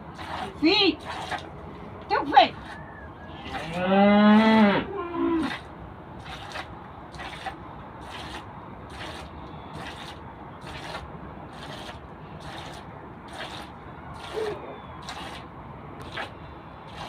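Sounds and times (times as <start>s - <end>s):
cow mooing: 3.4s - 5.5s.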